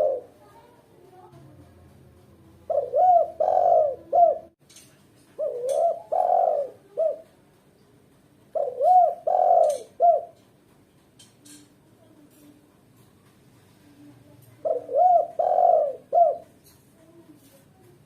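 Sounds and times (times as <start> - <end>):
dove cooing: 0.0 - 0.4, 2.6 - 4.6, 5.4 - 7.3, 8.5 - 10.4, 14.5 - 17.3.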